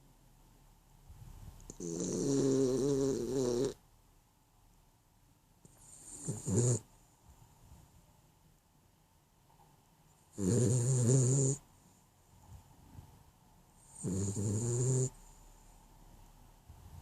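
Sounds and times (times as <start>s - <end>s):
dog snoring: 1.7s - 3.8s, 5.6s - 6.9s, 10.3s - 11.6s, 13.8s - 15.4s.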